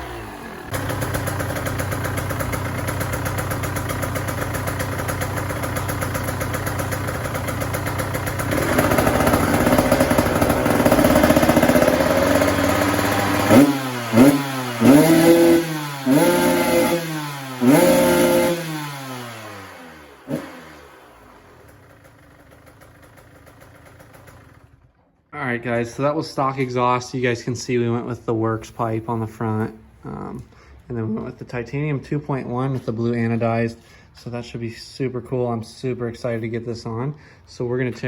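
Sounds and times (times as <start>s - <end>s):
two-stroke motorcycle engine revving: 0.0s - 24.9s.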